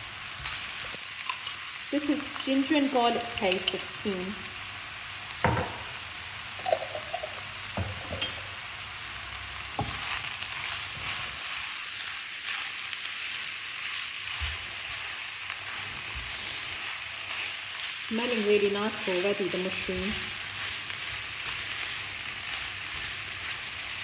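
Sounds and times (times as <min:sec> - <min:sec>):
food sizzling in a pan: 0:00.0 - 0:24.0
utensil knocking against pan: 0:05.4 - 0:05.9.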